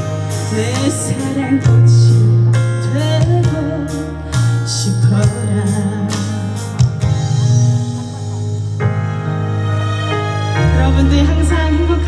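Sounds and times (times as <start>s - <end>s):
live band with guitar and bass: 0.0s - 12.0s
woman singing: 0.4s - 8.3s, 10.8s - 12.0s.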